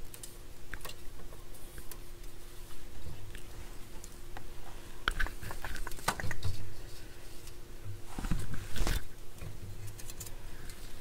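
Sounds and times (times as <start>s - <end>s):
rustling scrape: 6.6s - 9.1s.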